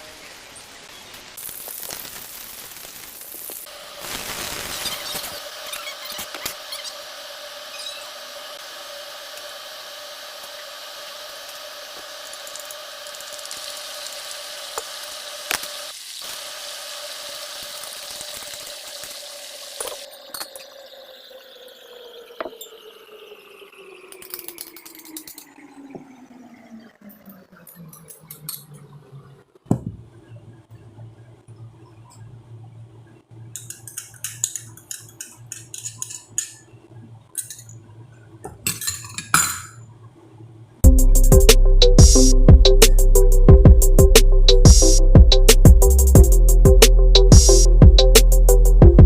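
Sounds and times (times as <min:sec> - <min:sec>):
motor hum winding down: 0:04.6 - 0:29.7.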